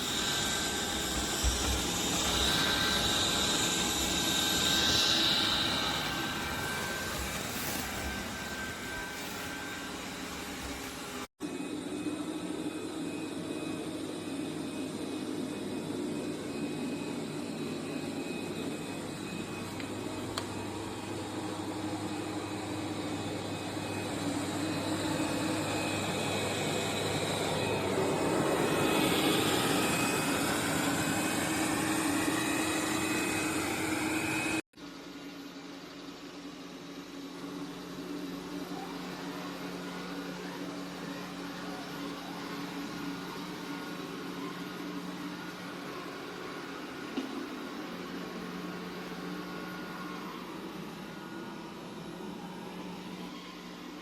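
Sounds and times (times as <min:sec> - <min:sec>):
robot vacuum hum: 0:00.0 - 0:34.6.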